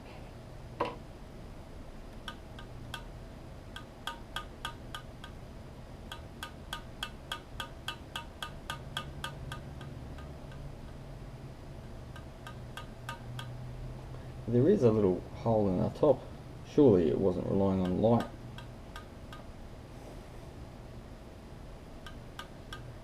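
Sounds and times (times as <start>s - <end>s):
low steady hum: 0.0s - 23.0s
light ringing ticks: 2.1s - 5.4s, 6.1s - 11.0s, 12.1s - 13.6s, 17.8s - 19.5s, 22.0s - 23.0s.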